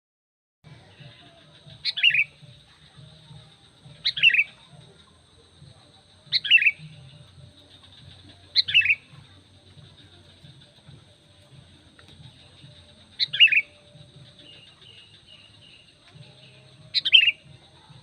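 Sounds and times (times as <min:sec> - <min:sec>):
bird calling: 0:00.8 - 0:05.2, 0:06.3 - 0:18.0.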